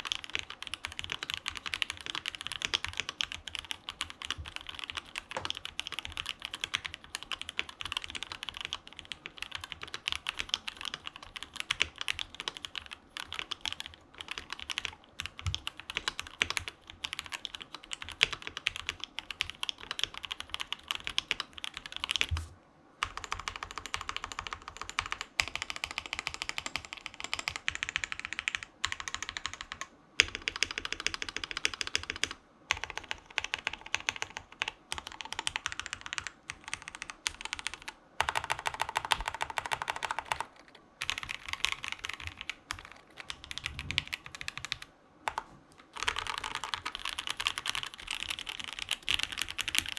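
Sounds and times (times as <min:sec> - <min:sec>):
fast mechanical keyboard typing: 0:00.0 - 0:49.9.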